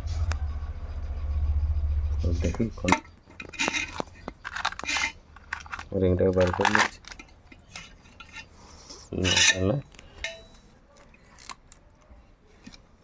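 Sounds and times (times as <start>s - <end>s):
metallic clinks and scraping: 2.0s - 11.6s.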